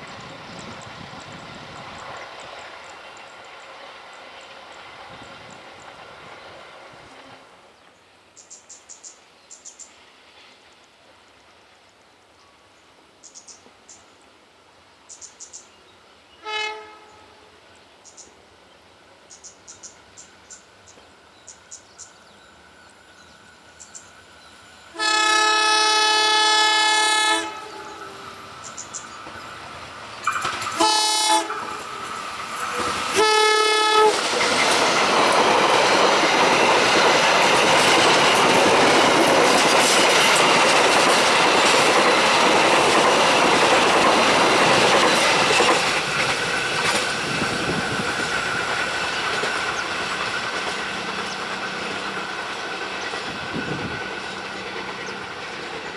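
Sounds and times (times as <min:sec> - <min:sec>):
train passing with rail noise: 0:00.0 - 0:55.9
train horn blasts: 0:16.4 - 0:17.6, 0:24.9 - 0:28.4, 0:30.6 - 0:34.4.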